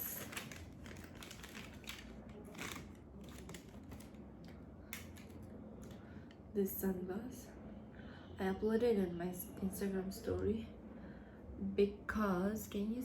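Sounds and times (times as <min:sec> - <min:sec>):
packaging rustling and clicking: 0:00.0 - 0:06.0.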